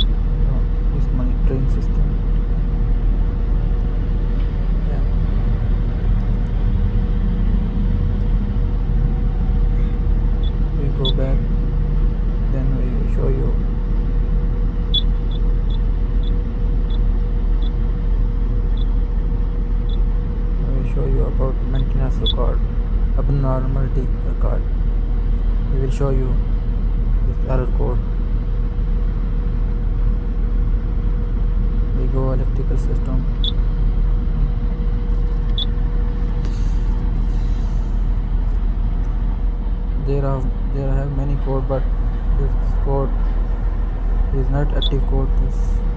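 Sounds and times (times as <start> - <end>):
excavator diesel engine idling: 0.0 - 28.2.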